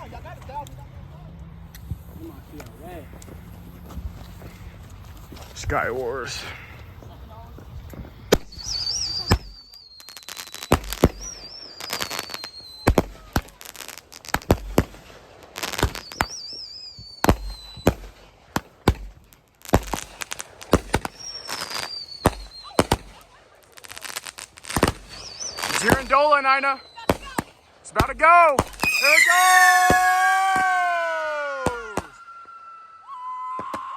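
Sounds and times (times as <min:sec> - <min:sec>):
fireworks bangs and cracks: 0:01.6 - 0:32.8, 0:33.4 - 0:33.9
firework whistles: 0:07.9 - 0:23.2, 0:24.0 - 0:27.5, 0:28.6 - 0:33.9.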